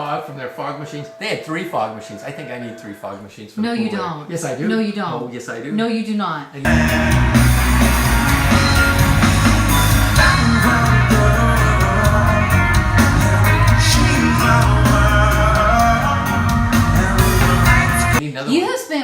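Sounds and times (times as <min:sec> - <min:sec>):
live band playing: 0:06.7 - 0:18.2
person singing: 0:06.7 - 0:18.2.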